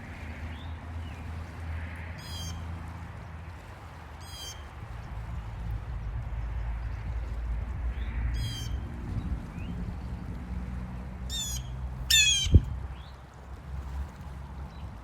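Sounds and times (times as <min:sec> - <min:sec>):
blue jay harsh calls: 0:02.2 - 0:02.5, 0:11.3 - 0:12.6.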